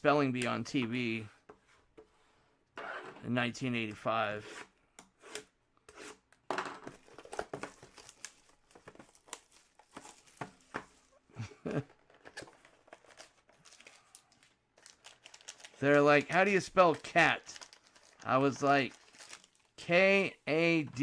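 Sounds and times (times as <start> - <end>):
wrappers crinkling and tearing: 7.0 - 11.1, 12.9 - 19.8.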